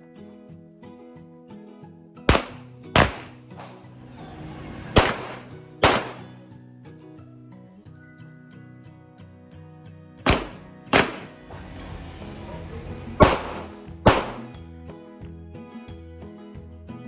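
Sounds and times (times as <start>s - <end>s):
background music: 0.0s - 17.0s
handgun shots: 2.3s - 3.8s, 5.0s - 6.4s, 10.3s - 11.4s, 13.2s - 14.5s.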